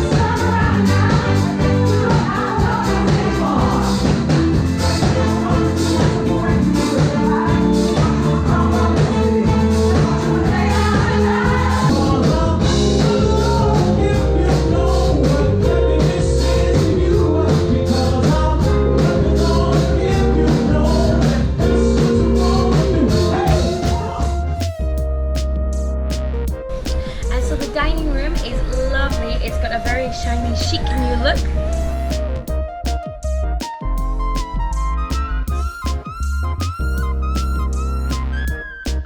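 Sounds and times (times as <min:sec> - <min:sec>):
lead singer: 0:00.0 - 0:24.8
live rhythm and blues band: 0:00.0 - 0:24.8
drum kit steady beat: 0:00.0 - 0:39.0.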